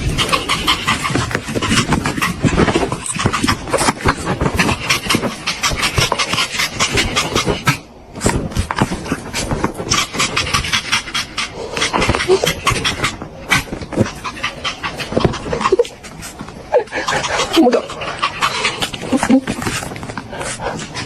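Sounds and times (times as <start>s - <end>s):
dog panting rapidly: 0.0s - 21.0s.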